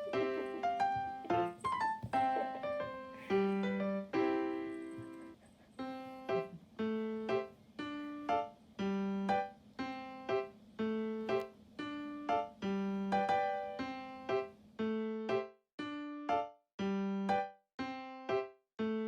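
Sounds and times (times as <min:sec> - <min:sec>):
gentle piano-like melody: 0:00.0 - 0:19.0.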